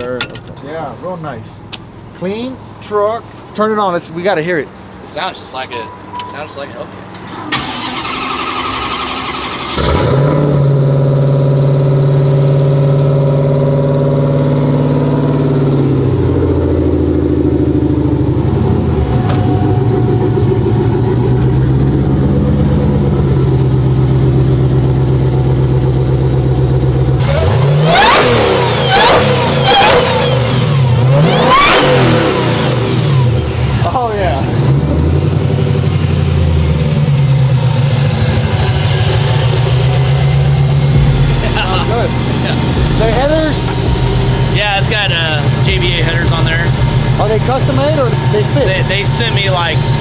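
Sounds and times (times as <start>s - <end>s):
truck engine starting and idling: 7.2s - 50.0s
engine revving: 7.5s - 50.0s.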